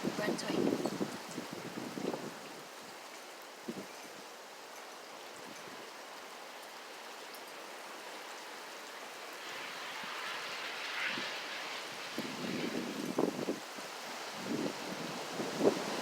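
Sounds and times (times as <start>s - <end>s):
wind blowing hard: 0.0s - 2.9s, 9.4s - 16.0s.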